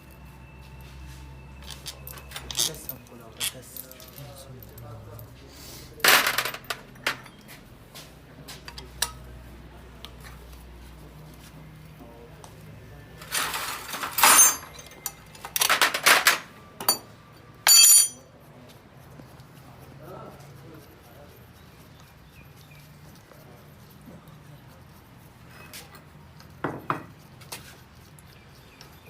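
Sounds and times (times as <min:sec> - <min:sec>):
hard objects clinking and clattering: 0:06.0 - 0:07.5, 0:13.2 - 0:18.3.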